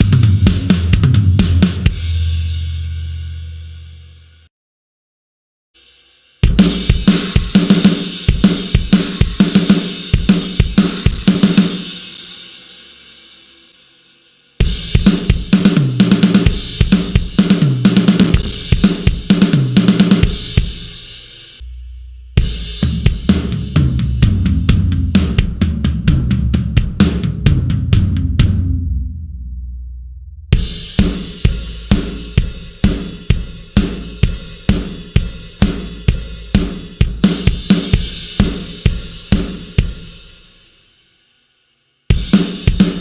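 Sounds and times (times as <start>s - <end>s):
drum kit grooves: 0.0s - 4.4s, 5.8s - 13.8s, 14.6s - 41.0s, 42.1s - 43.0s
low boom: 27.4s - 30.6s.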